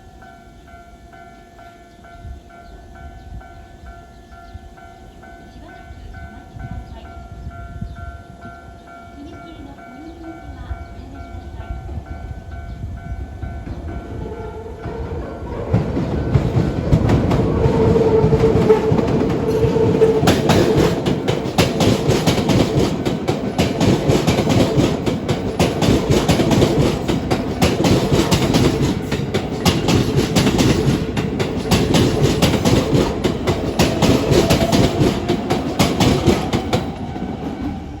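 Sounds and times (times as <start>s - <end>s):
train wheels clacking over rail joints: 13.4s - 38.0s.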